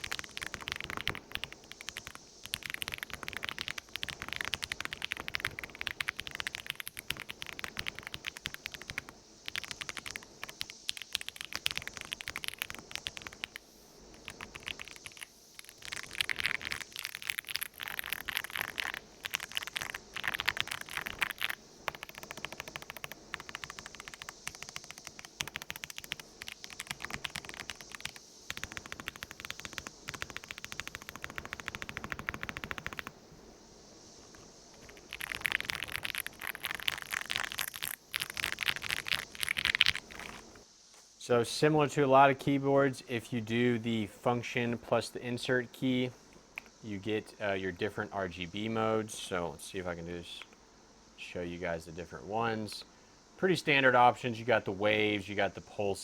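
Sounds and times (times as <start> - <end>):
mechanical keyboard typing: 0.0 - 13.6, 14.2 - 33.1, 34.8 - 40.4.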